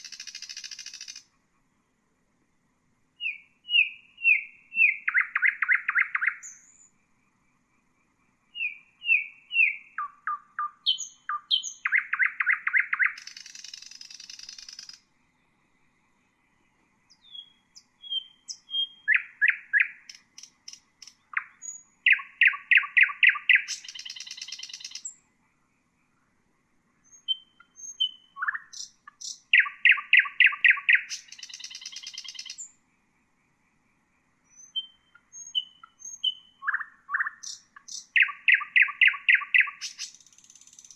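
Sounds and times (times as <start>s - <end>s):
nightingale singing: 0.0s - 1.6s, 3.2s - 40.9s.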